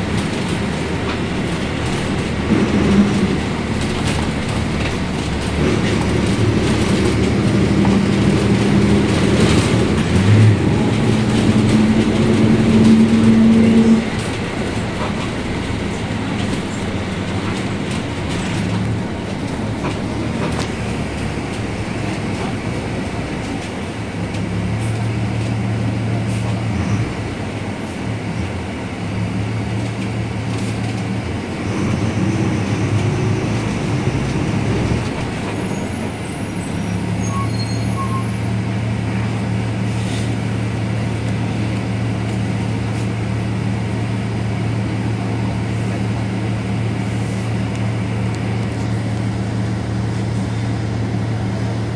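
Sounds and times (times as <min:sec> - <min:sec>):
light body rattles: 0:00.0 - 0:25.4
bus differential droning: 0:00.0 - 0:51.9
bus engine noise: 0:00.0 - 0:51.9.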